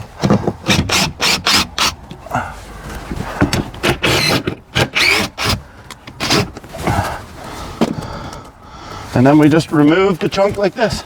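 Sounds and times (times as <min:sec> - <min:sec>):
wood squeaking against wood: 0:00.0 - 0:08.5.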